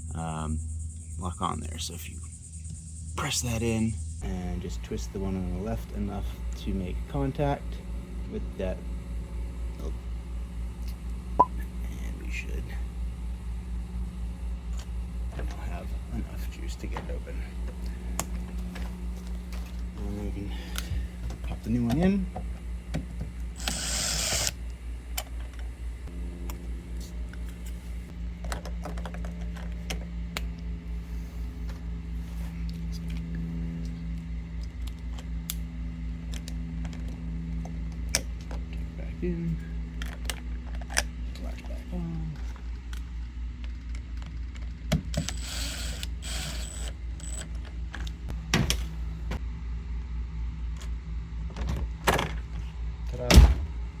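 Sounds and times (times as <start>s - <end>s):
steady low hum: 0.0s - 54.0s
lock motor whirring: 4.8s - 31.0s, 43.7s - 49.4s.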